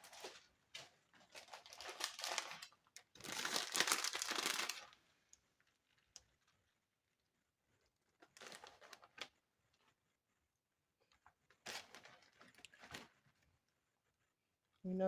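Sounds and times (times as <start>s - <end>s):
plastic packaging crinkling: 0.0s - 5.0s, 8.2s - 9.3s, 11.6s - 13.2s.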